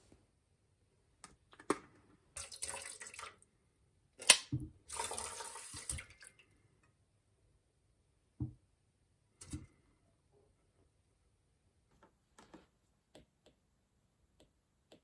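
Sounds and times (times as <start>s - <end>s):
water tap running into sink: 4.2s - 6.3s.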